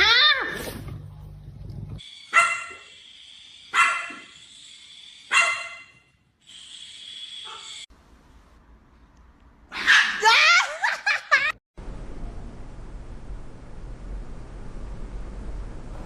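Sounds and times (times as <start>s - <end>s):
dog barking: 2.3s - 2.9s, 3.7s - 4.3s, 5.3s - 6.0s, 9.7s - 10.2s.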